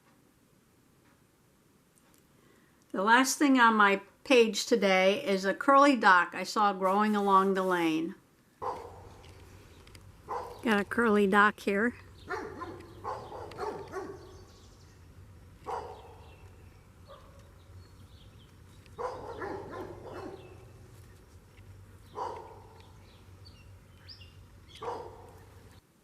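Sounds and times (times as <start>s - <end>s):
steady low hum: 8.2s - 25.9s
dog barking: 8.6s - 9.2s, 10.3s - 10.6s, 12.2s - 14.4s, 15.6s - 16.3s, 17.0s - 17.5s, 19.0s - 20.8s, 22.1s - 22.9s, 24.8s - 25.5s.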